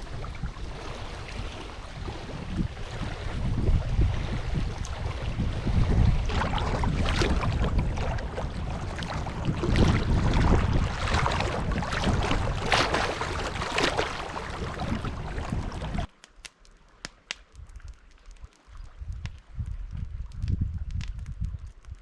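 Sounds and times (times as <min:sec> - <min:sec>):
water lapping against a canoe: 0:00.0 - 0:16.1
wind buffeting microphone: 0:00.0 - 0:16.1, 0:17.5 - 0:22.0.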